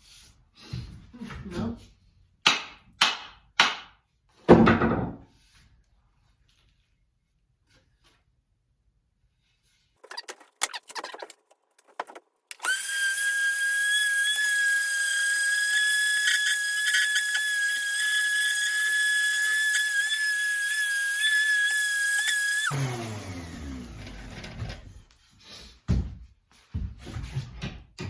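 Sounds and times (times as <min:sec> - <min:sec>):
handling clicks and scrapes: 0:10.0 - 0:12.7
power tool whining: 0:12.5 - 0:24.9.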